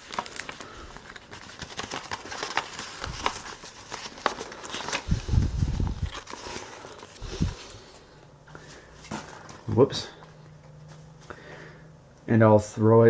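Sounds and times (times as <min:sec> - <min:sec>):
items clicking and rustling in box: 0:00.0 - 0:07.8, 0:08.6 - 0:11.0.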